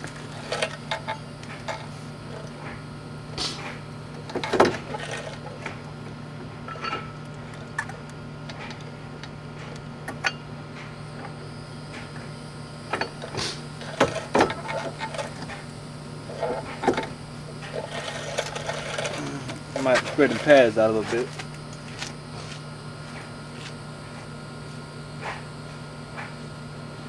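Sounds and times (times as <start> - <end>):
steady low hum: 0.0 - 27.0
metal tools clinking: 6.7 - 7.2.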